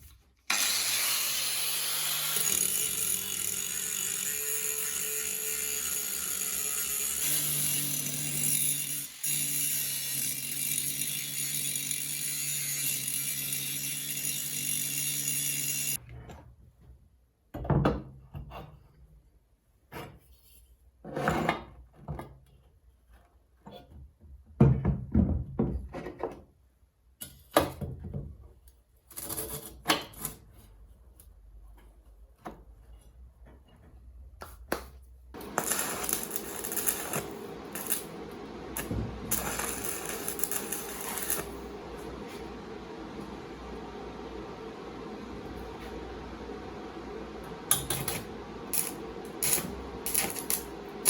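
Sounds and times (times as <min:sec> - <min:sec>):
noisy working sound with hum: 0:35.3 - 0:51.0.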